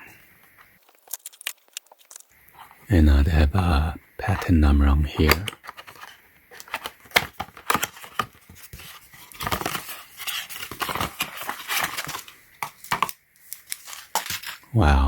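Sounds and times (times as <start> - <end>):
packaging rustling: 0.4 - 2.4, 5.2 - 14.7.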